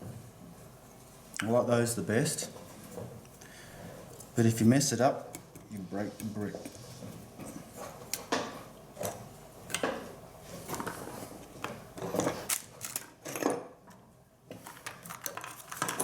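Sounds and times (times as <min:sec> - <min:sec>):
small hard objects knocking and scraping: 0:14.6 - 0:16.0.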